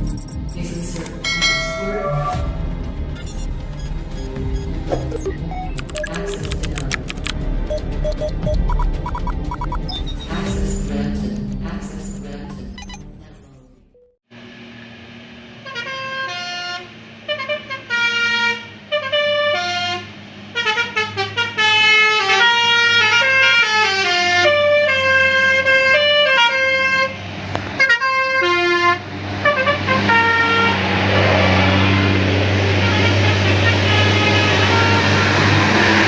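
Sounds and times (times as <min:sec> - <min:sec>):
bus engine running: 0:09.4 - 0:36.0
bus horns playing melodies: 0:15.6 - 0:36.0.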